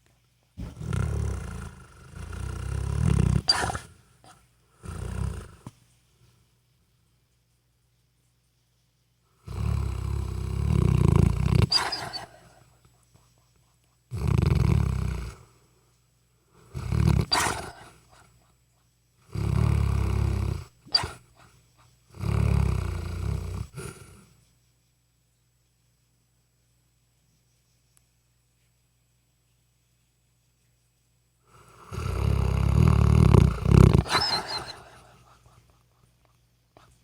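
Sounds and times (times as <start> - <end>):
dog snoring: 0.6 - 5.8, 9.4 - 12.7, 14.1 - 15.6, 16.5 - 18.3, 19.2 - 24.4, 31.5 - 35.9.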